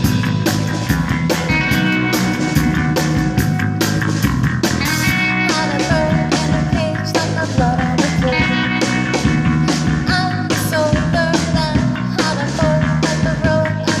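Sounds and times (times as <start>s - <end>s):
electric guitar: 0.0s - 14.0s
live rock band playing: 0.0s - 14.0s.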